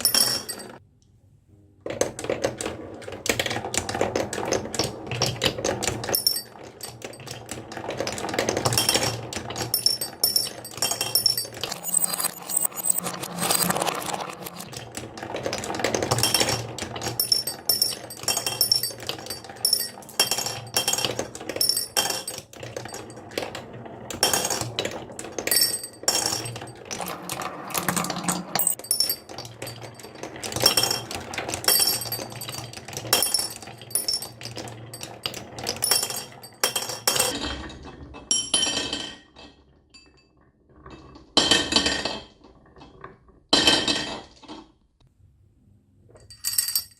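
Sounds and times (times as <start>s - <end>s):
marbles clicking down wooden run: 1.9s - 37.4s.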